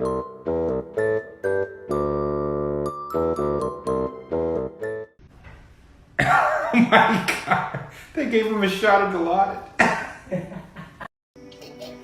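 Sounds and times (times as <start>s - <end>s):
bouncy piano chords: 0.0s - 5.2s.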